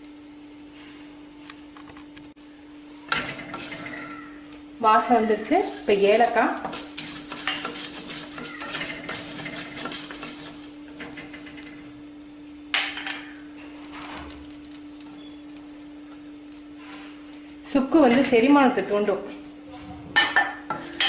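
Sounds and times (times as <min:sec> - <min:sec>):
steady low hum: 0:00.0 - 0:21.0
spices rattling in a pan: 0:03.1 - 0:11.8, 0:12.8 - 0:17.2, 0:20.7 - 0:21.0.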